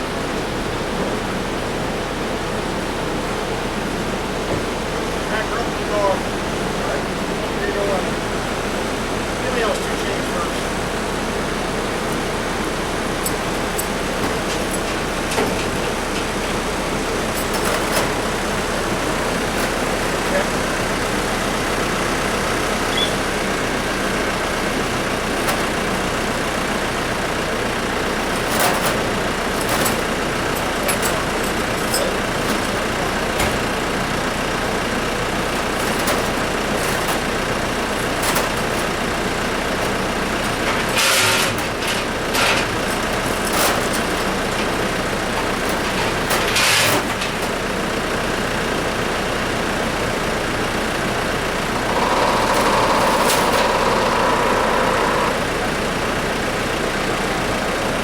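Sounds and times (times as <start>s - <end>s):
engine running: 0.0s - 58.0s
metal clicks and knocks: 13.2s - 16.6s, 17.3s - 18.4s, 19.3s - 20.2s, 24.9s - 26.2s, 28.0s - 47.7s
rushing noises: 24.3s - 47.8s.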